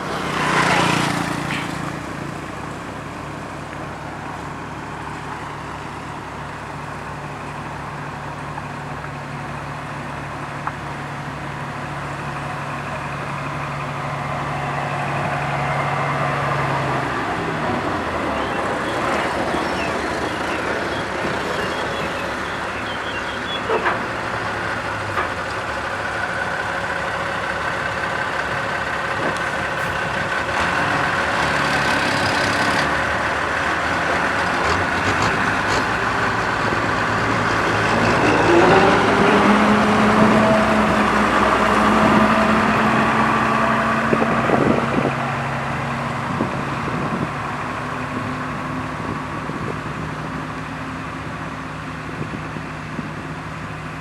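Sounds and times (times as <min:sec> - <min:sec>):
road roller diesel engine: 0:00.0 - 0:54.0.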